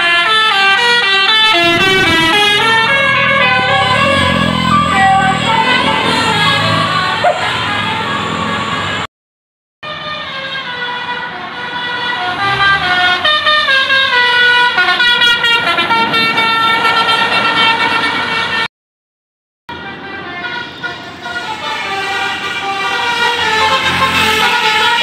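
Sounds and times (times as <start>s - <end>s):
multi-tone air horn playing a tune: 19.8s - 25.0s.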